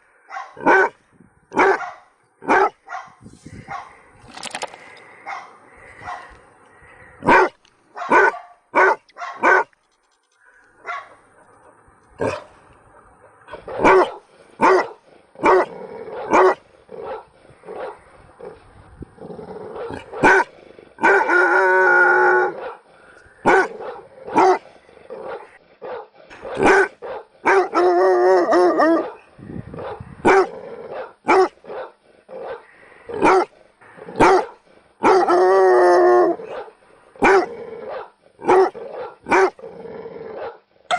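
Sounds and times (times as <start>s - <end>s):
dogs barking: 0.3s - 1.0s, 1.6s - 4.0s, 7.3s - 9.7s, 10.8s - 11.2s, 13.5s - 18.0s, 19.8s - 21.4s, 23.4s - 24.6s, 25.2s - 27.8s, 29.8s - 33.5s, 34.2s - 35.4s, 36.4s - 39.6s.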